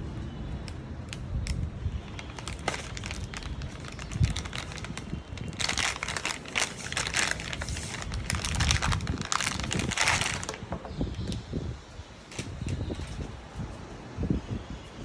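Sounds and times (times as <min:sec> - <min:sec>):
packaging crinkling and rustling: 0:01.4 - 0:11.4, 0:12.3 - 0:13.3.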